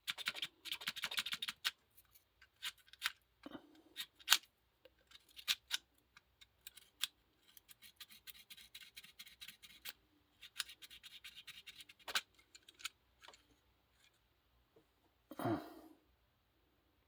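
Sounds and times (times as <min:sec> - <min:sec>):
nail file scraping metal: 0:06.6 - 0:13.4.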